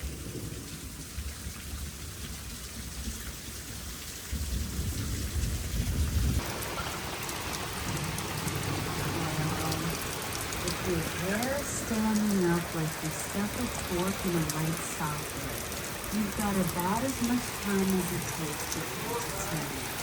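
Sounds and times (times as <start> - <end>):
low rolling thunder: 0.0 - 2.6, 4.2 - 11.6
heavy rain falling: 0.0 - 20.0.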